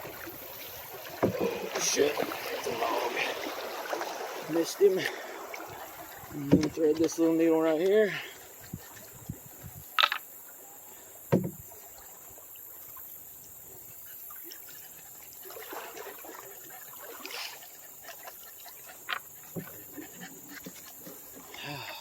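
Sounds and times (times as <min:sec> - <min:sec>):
water rushing and splashing: 0:00.0 - 0:22.0
knocks on canoe hull: 0:01.1 - 0:01.8, 0:06.4 - 0:07.1, 0:11.3 - 0:11.7.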